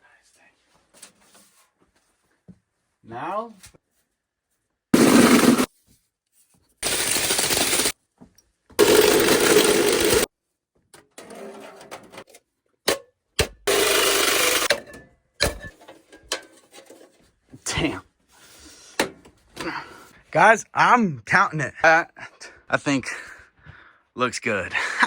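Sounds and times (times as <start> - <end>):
handheld power tool bursts: 5.0 - 5.7, 6.8 - 7.9, 8.8 - 10.3, 13.4 - 14.8.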